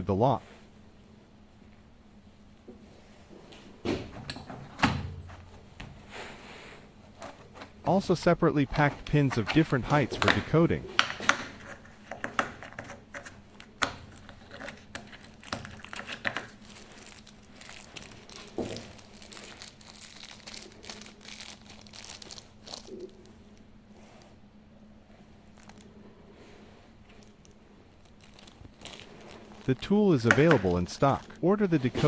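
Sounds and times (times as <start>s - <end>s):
plastic packaging crinkling: 14.0s - 23.4s, 25.4s - 25.9s, 27.1s - 32.0s.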